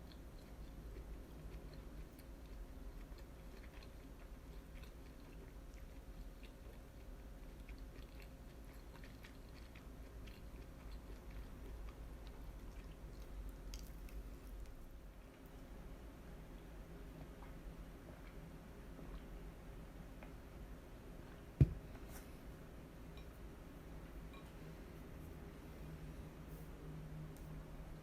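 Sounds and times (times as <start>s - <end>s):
wet chewing mouth sounds: 0.0s - 15.5s
steady low hum: 0.0s - 28.0s.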